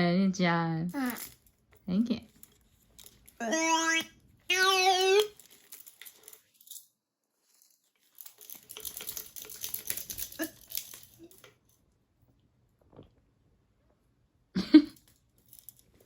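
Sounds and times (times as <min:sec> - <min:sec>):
plastic toy rattling: 0:00.9 - 0:01.5, 0:02.3 - 0:06.8, 0:07.5 - 0:11.6.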